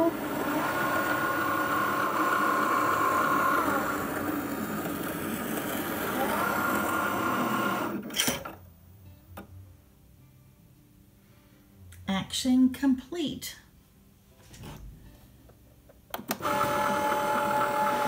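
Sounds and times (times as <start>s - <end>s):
cutting machine motors whining: 0.0s - 8.5s, 16.2s - 18.0s.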